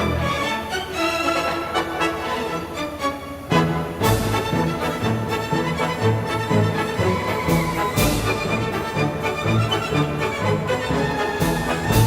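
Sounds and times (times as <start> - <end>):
orchestral background music: 0.0 - 12.0.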